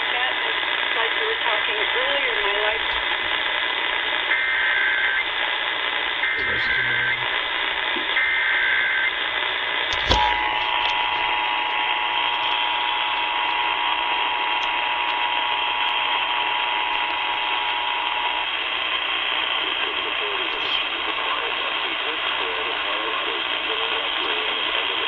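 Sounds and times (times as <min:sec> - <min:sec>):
radio hiss: 0:00.0 - 0:25.0
warbling data tones: 0:01.4 - 0:24.8
two-tone attention signal: 0:06.2 - 0:07.2.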